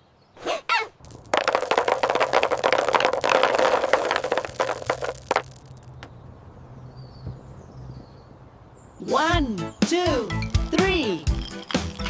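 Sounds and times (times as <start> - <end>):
candies rattling together: 1.0 - 6.0.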